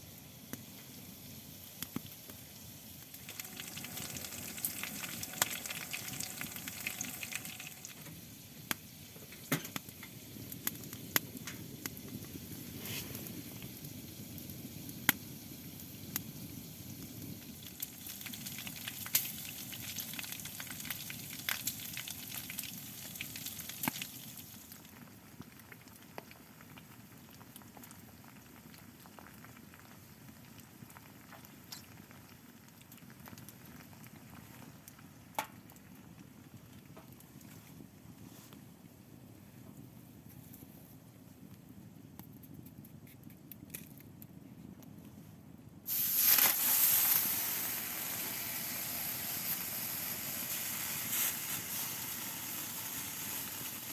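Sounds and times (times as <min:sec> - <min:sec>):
meat sizzling on stove: 0:00.0 - 0:27.0, 0:45.9 - 0:53.9.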